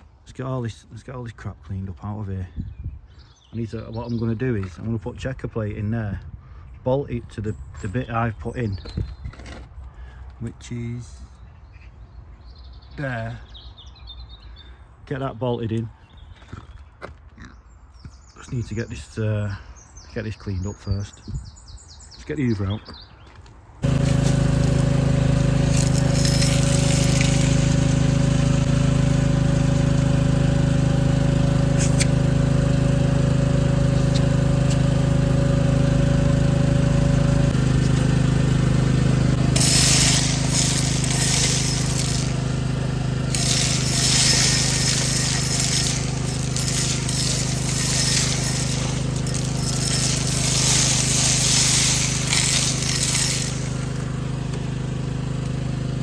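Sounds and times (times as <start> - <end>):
vacuum sucking up debris hiss: 23.8 - 29.0, 39.4 - 54.6
vacuum cleaner motor humming: 23.8 - 56.0.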